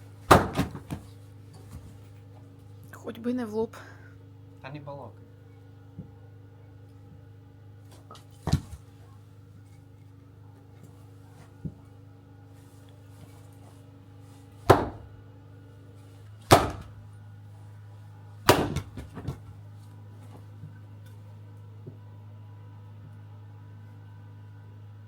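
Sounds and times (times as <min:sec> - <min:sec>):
axe striking firewood: 0:00.3 - 0:01.0, 0:14.6 - 0:15.2, 0:16.5 - 0:17.0, 0:18.5 - 0:19.4.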